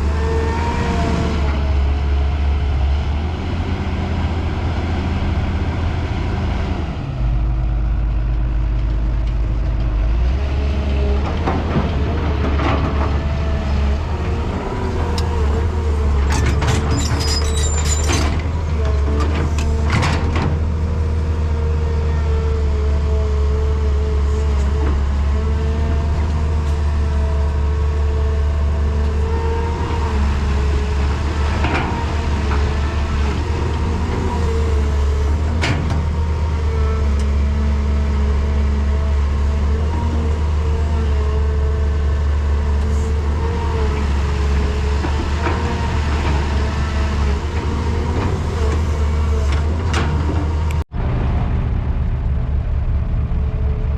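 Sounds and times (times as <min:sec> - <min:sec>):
excavator diesel engine humming: 0:00.0 - 0:53.9.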